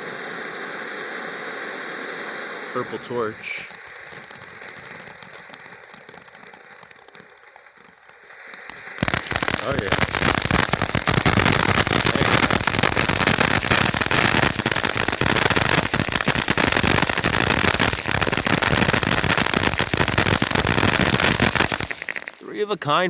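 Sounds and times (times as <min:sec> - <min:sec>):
firework fountain crackling: 0:00.0 - 0:23.0.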